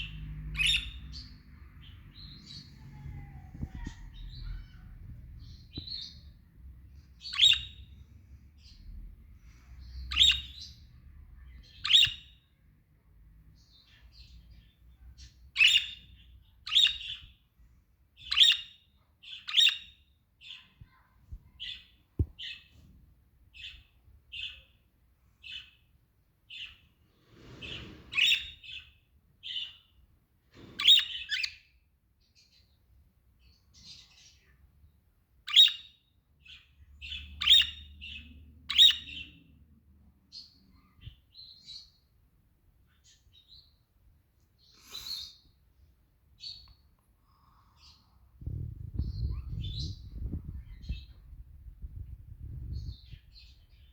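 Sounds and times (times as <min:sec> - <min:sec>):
budgerigars chirping and squawking: 0:00.0 - 0:02.8, 0:07.1 - 0:08.0, 0:08.6 - 0:10.9, 0:11.5 - 0:12.4, 0:15.5 - 0:17.3, 0:18.2 - 0:20.6, 0:27.4 - 0:28.9, 0:30.6 - 0:31.6, 0:35.5 - 0:35.9, 0:36.5 - 0:39.5.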